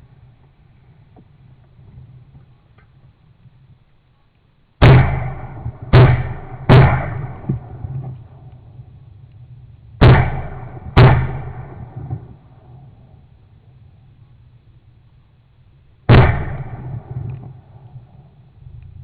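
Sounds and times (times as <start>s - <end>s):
shotgun blasts with echo: 4.8s - 8.5s, 10.0s - 13.1s, 16.1s - 18.2s.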